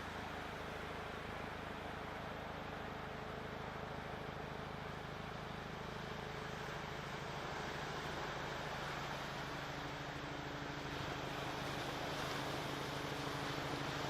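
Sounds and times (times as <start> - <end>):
low steady hum: 0.0 - 14.0
wind: 0.0 - 14.0
surf washing on beach: 6.3 - 14.0.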